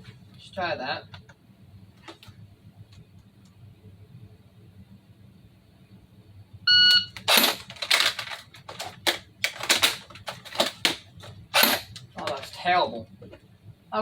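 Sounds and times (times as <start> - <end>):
shot timer beep: 6.7 - 7.2
plastic magazine clatter: 7.1 - 12.6.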